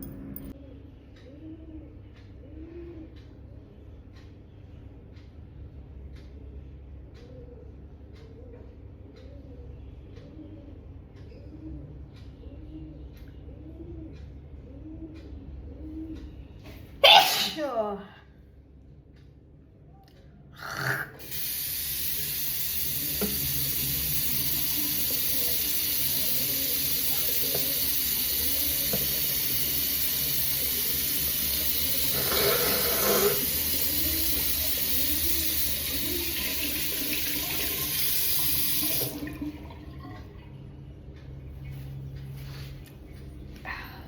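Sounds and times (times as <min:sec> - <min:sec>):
tap water running into sink: 0:21.2 - 0:40.4.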